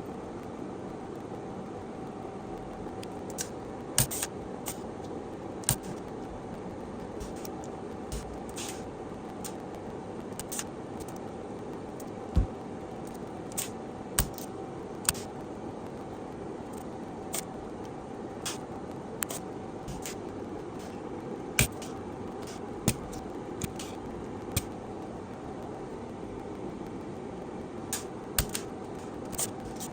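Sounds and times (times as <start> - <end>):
steady background hum: 0.0 - 29.9
small tools and metal parts clicking: 3.0 - 4.8, 7.2 - 8.8, 10.4 - 11.2, 13.0 - 15.3, 19.2 - 20.2, 21.6 - 24.7, 27.9 - 29.9.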